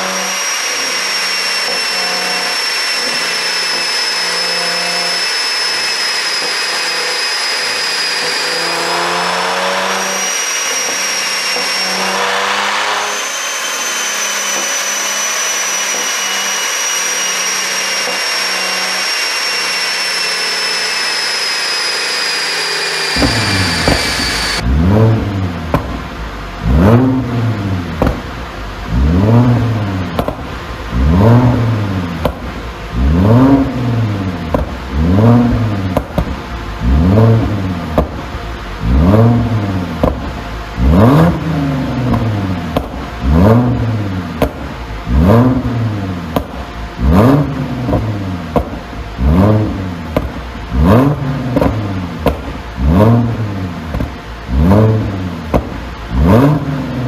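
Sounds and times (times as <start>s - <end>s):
car engine revving: 0.0s - 57.0s
exhaust pops and crackles: 23.1s - 52.8s, 53.8s - 54.8s, 55.4s - 56.4s.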